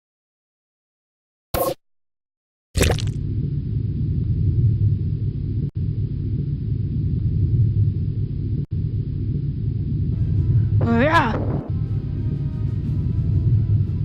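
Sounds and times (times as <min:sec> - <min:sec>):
steady low rumble: 0:03.2 - 0:14.0.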